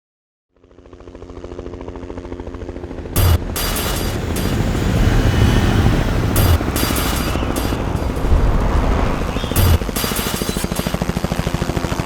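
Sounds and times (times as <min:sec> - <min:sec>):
low boom hits: 0:03.2 - 0:10.9
soundtrack music: 0:03.2 - 0:11.2
fast chopping pulse: 0:03.2 - 0:11.5.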